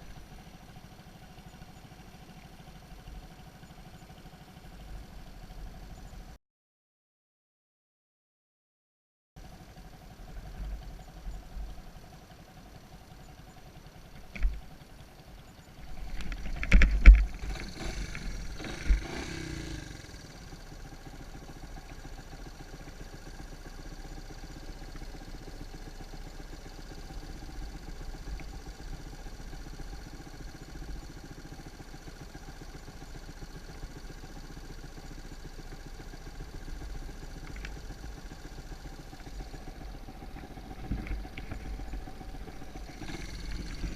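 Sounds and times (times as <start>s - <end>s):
engine knocks and clatter: 0.0s - 6.4s, 9.4s - 43.9s
engine running: 0.0s - 6.4s, 9.4s - 43.9s.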